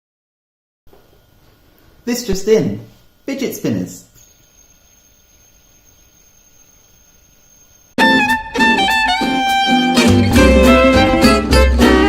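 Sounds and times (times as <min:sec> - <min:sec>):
faint high-pitched whine: 0:00.9 - 0:08.0
violin-led music: 0:08.0 - 0:12.0.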